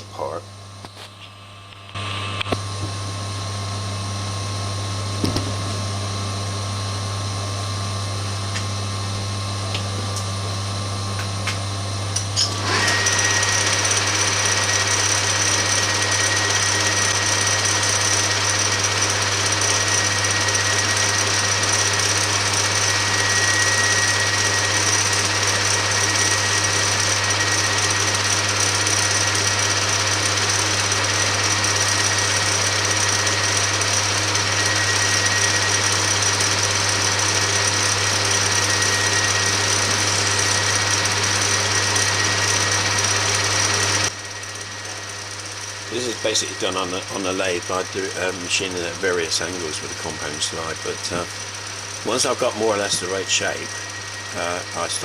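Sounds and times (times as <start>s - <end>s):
power tool whine and grinding: 1.8s - 55.0s
metal lathe humming: 1.9s - 55.0s.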